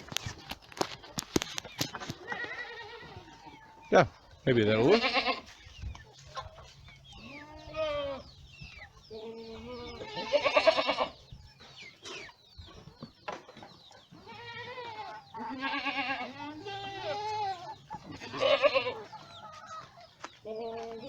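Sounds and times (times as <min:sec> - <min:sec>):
goats bleating: 0:02.2 - 0:03.4, 0:04.6 - 0:05.6, 0:07.2 - 0:08.2, 0:09.1 - 0:11.2, 0:14.2 - 0:19.1.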